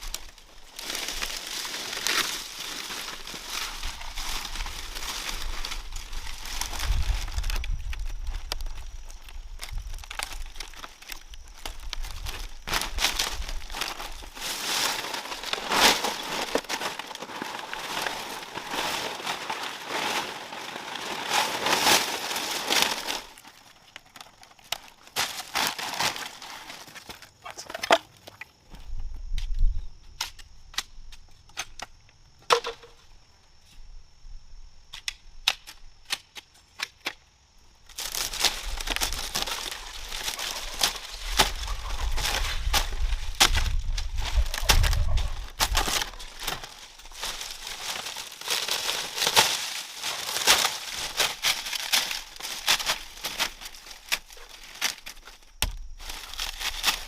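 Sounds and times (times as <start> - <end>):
dense crackling and rustling: 0.0 - 28.0, 37.9 - 57.0.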